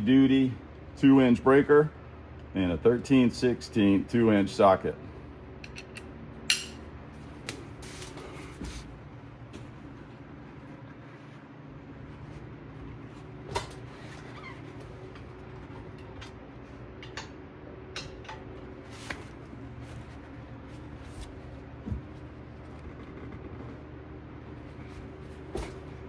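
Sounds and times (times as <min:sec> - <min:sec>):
steady low hum: 0:00.0 - 0:26.0
metallic clicks and knocks of tools: 0:05.6 - 0:06.8.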